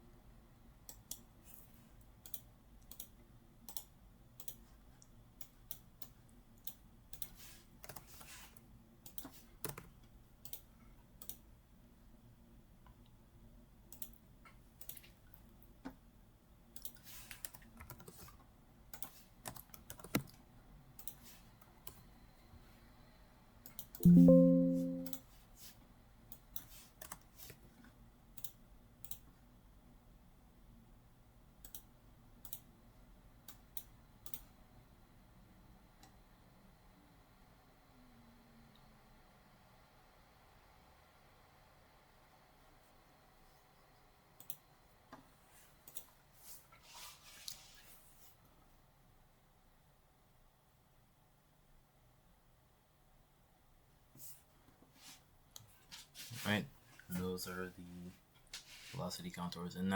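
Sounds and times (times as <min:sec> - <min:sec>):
mouse and keyboard clicks: 0:19.0 - 0:20.4.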